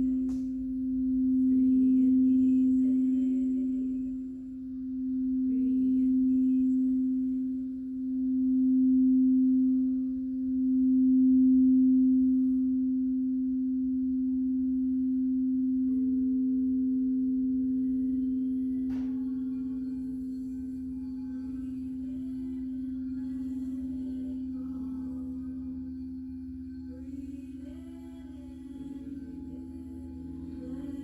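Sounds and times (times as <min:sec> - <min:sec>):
singing bowl low tone: 0:00.0 - 0:31.0
higher singing bowl tone: 0:15.3 - 0:31.0
singing bowl strike: 0:18.8 - 0:31.0.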